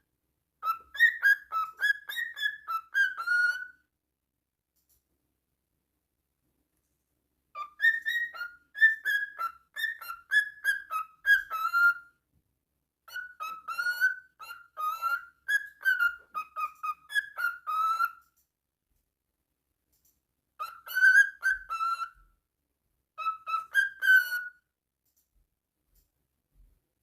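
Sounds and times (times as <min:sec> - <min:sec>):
parrot whistling a tune: 0:00.6 - 0:03.9, 0:07.6 - 0:12.2, 0:13.1 - 0:18.2, 0:20.6 - 0:22.3, 0:23.2 - 0:24.7.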